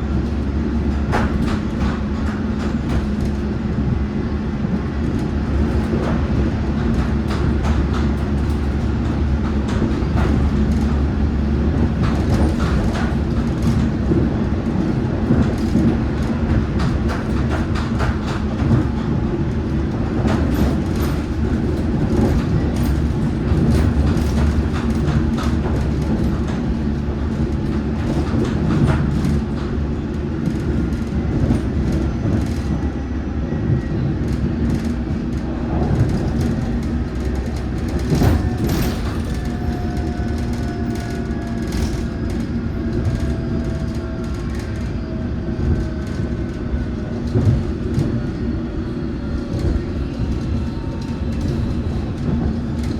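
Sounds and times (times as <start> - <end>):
wheels clicking over rails: 4.6 - 32.8, 34.2 - 48.6
train motor drone: 35.0 - 52.9.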